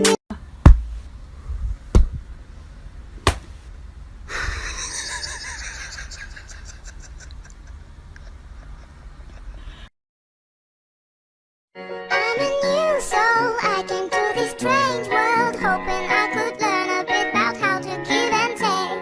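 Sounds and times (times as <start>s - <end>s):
sharp knocks: 0.6s - 1.1s, 1.9s - 2.2s, 3.2s - 3.6s.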